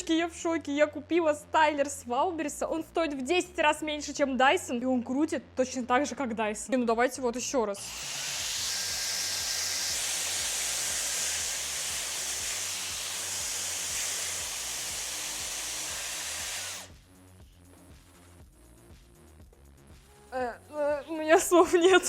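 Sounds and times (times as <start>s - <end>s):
hair styler blowing air: 7.8s - 17.0s.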